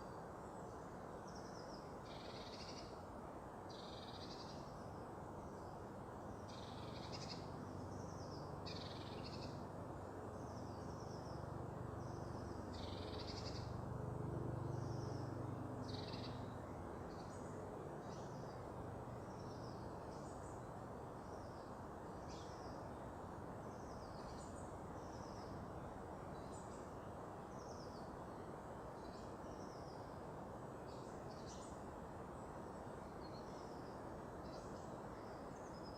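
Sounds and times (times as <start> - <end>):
small birds chirping: 12.0 - 13.8, 14.6 - 22.9.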